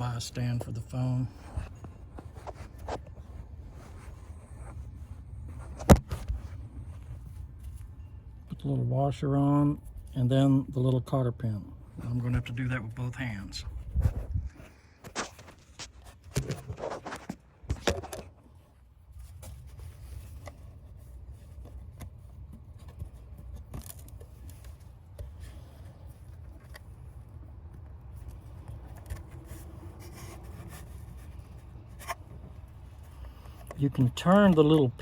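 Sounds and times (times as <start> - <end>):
steady low rumble: 11.5 - 15.0.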